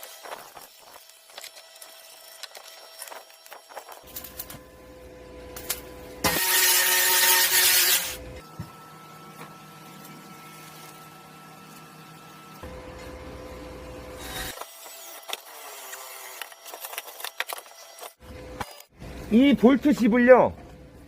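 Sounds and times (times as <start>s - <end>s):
welding arc crackling: 0.0s - 4.8s, 5.5s - 8.2s.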